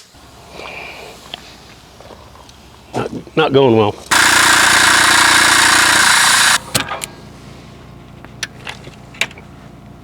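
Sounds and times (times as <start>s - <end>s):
pneumatic air hammer running: 4.1s - 6.8s.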